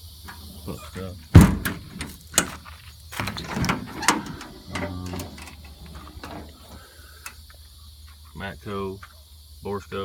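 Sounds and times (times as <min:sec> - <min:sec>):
metal drawer sliding: 0:01.4 - 0:02.6, 0:03.2 - 0:06.8
metal tools clinking: 0:03.2 - 0:07.4.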